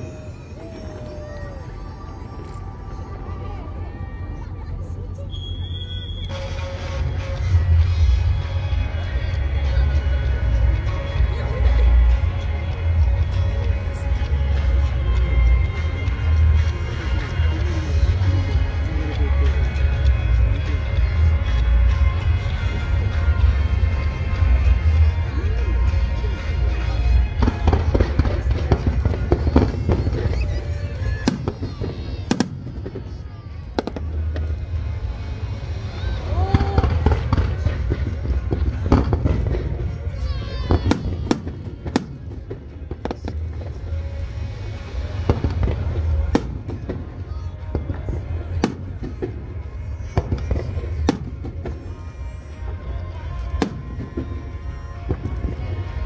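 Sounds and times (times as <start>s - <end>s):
music: 0.0s - 56.0s
fireworks bursting: 19.5s - 56.0s.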